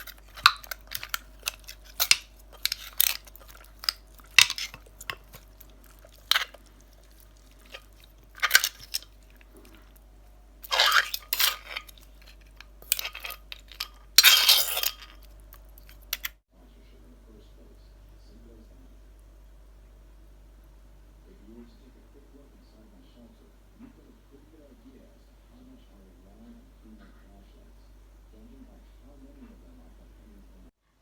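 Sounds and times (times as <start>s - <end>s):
utensils clinking against dishes: 0.0s - 9.8s, 10.6s - 15.3s
crunching: 0.0s - 16.4s.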